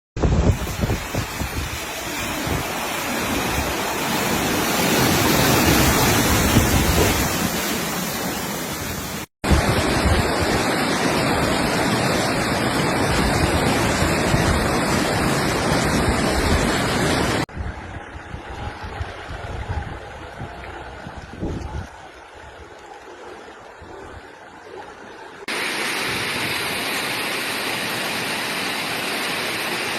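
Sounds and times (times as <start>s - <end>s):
heavy rain: 0.5s - 17.5s, 25.4s - 29.9s
rushing flood water: 0.5s - 29.9s.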